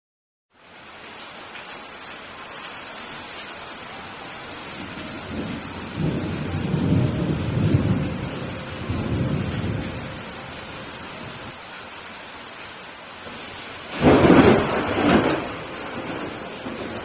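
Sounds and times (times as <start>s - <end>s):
steady rain hiss: 0.5s - 17.0s
thunder rumbling: 4.3s - 11.7s, 13.2s - 17.0s.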